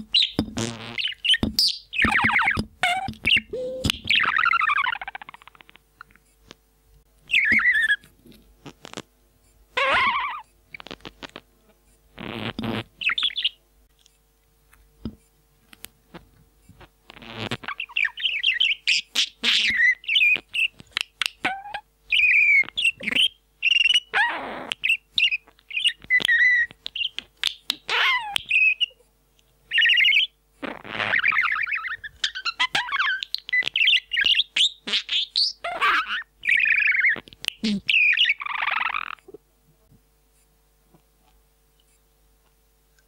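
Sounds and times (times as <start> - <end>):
parrot whistling and chirping: 0.1 - 5.6, 7.3 - 8.0, 9.8 - 10.4, 13.0 - 13.6, 17.6 - 29.0, 29.7 - 39.3.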